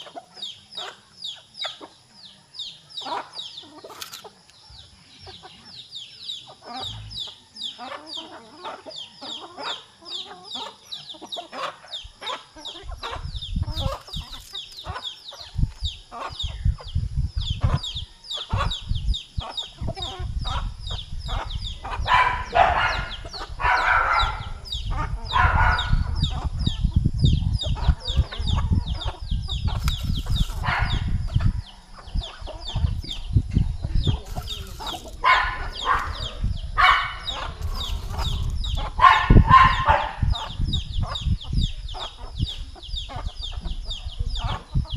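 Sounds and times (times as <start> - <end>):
chickens clucking: 0.0 - 44.9
flock of chickens chirping: 0.0 - 44.9.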